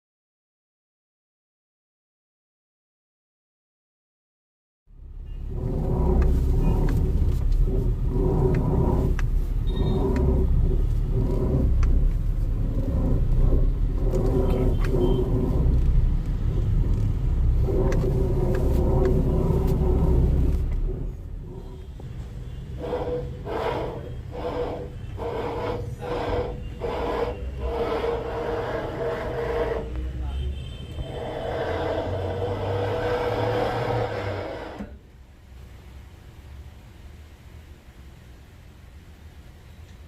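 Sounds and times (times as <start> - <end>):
car engine running: 4.9 - 30.1
power steering rumble: 5.0 - 22.2
scattered clicks: 8.4 - 20.8.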